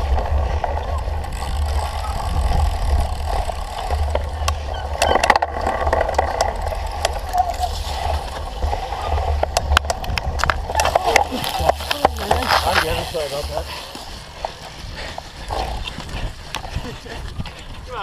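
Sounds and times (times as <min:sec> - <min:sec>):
bike rattling: 0:00.0 - 0:18.0
wind buffeting microphone: 0:00.0 - 0:18.0.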